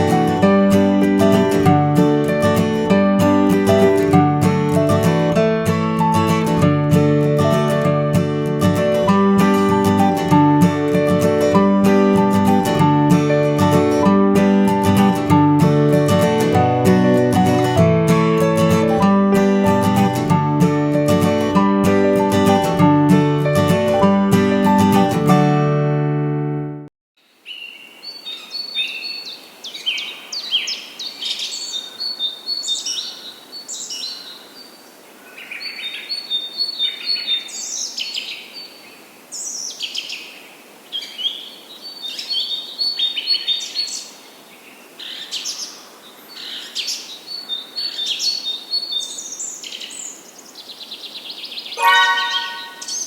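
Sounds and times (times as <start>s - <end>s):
faint background hiss: 27.2s - 53.0s
songbirds chirping: 27.2s - 53.0s.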